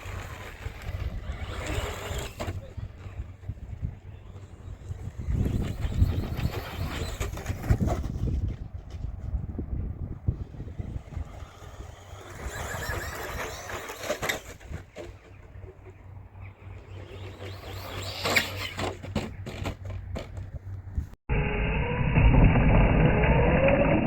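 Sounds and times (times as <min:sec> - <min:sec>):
rc car motor whine: 0:00.0 - 0:08.4, 0:10.3 - 0:19.8, 0:21.3 - 0:24.0
low rumble: 0:21.3 - 0:24.0.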